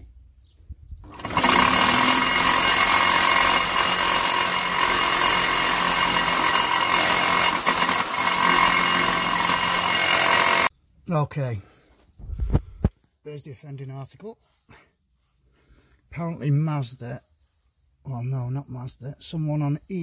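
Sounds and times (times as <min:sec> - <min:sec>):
reciprocating saw cutting metal pipe: 0:01.1 - 0:10.7.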